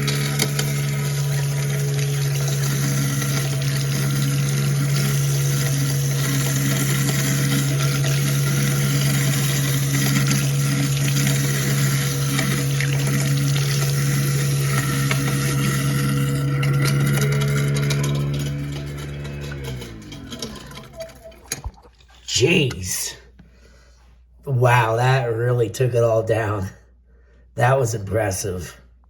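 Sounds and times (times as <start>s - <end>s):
garbage disposal grinding: 0.0s - 23.2s
water running: 0.0s - 23.3s.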